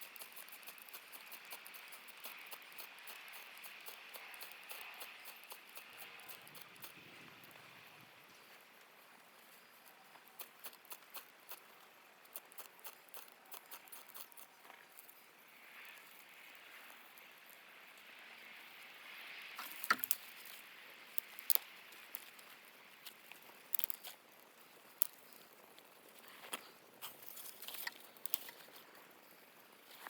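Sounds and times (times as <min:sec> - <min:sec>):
small clicks and crackles: 0:00.0 - 0:30.0.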